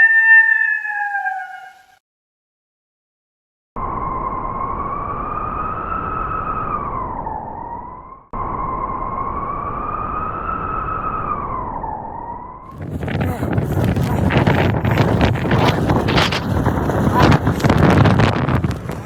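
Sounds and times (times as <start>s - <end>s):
wolf howling: 0.0s - 1.9s.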